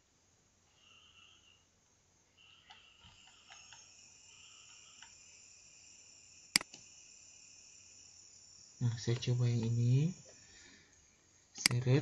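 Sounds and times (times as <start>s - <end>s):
insect chirring: 0.7s - 12.0s
sharp click: 6.5s - 6.9s, 11.6s - 11.8s.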